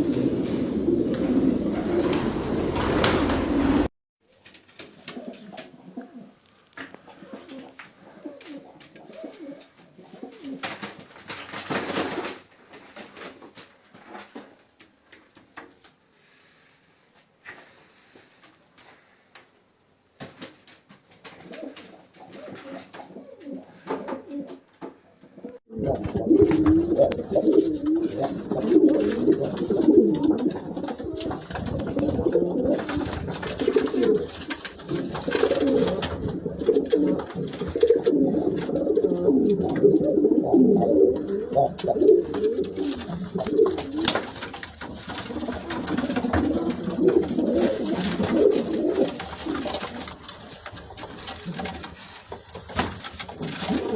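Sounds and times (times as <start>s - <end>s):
pigeons cooing: 0.0s - 3.9s, 25.4s - 53.9s.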